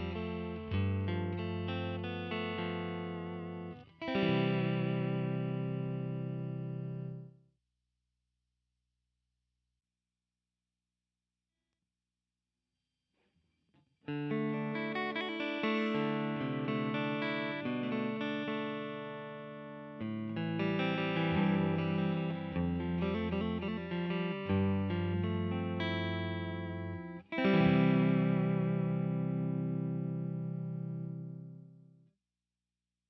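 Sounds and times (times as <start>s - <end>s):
electric guitar with reverb: 0.0s - 7.4s, 14.0s - 32.0s.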